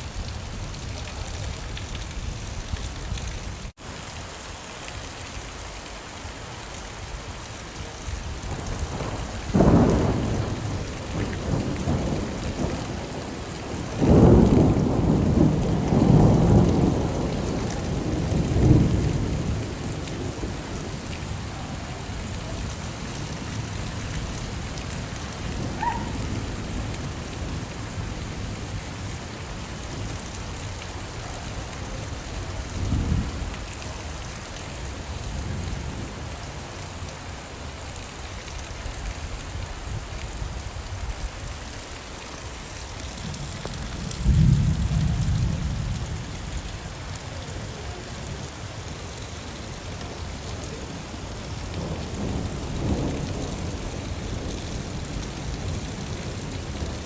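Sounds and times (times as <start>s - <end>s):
steady rain falling: 0.0s - 57.0s
thunder clap and rumble: 8.2s - 29.1s, 31.4s - 34.0s, 43.1s - 46.4s, 51.4s - 57.0s.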